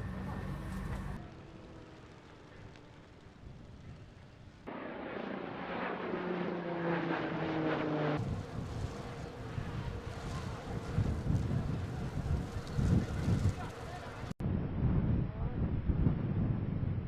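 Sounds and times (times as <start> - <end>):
vehicle engine drone passing: 4.6 - 14.4.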